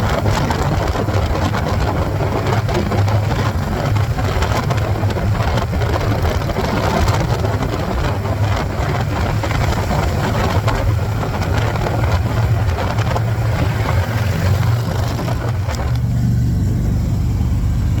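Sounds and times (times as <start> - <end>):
motorcycle engine running: 0.0 - 18.0.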